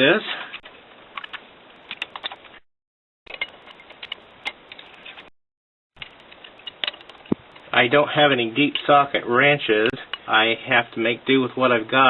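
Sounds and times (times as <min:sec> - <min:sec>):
ratchet wrench clicking: 0:03.3 - 0:05.3, 0:06.0 - 0:07.8.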